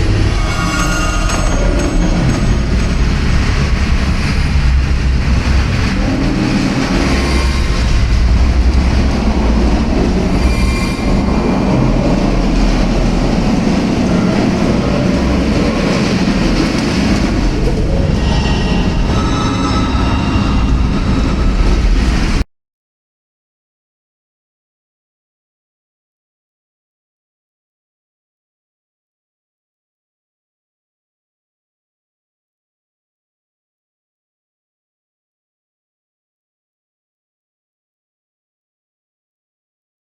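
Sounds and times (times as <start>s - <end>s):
metallic wheel squeals: 0.0s - 3.2s, 10.2s - 11.7s, 18.1s - 22.2s
train rumbling on rails: 0.0s - 22.4s.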